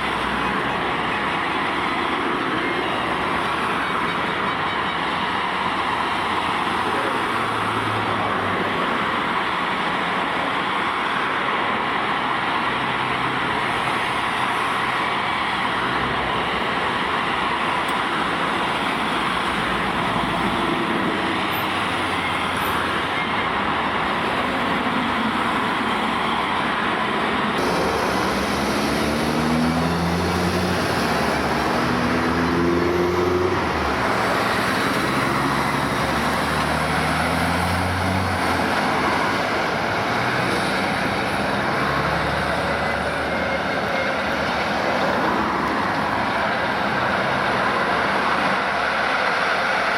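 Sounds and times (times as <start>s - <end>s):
traffic noise: 0.0s - 49.9s
engine revving: 27.6s - 43.4s.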